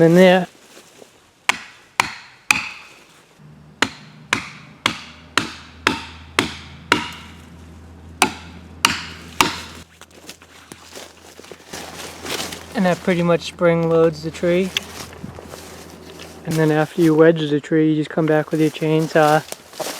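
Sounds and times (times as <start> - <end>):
hammer striking metal wedges: 1.5 - 3.0, 3.8 - 7.5, 8.2 - 9.8.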